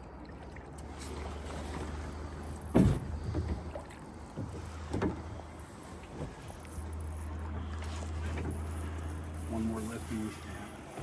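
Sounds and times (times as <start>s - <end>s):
low rumble of river water: 0.0s - 11.0s
boat thumps: 1.1s - 6.5s.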